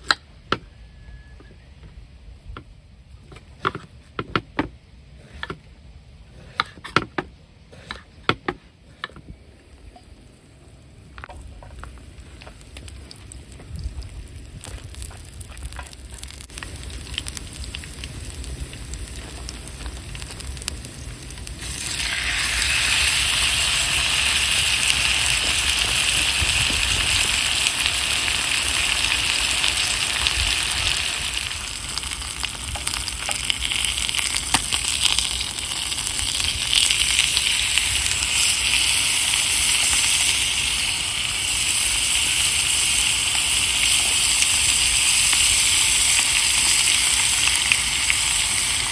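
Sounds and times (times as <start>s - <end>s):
food sizzling in a hot pan: 14.7s - 48.9s.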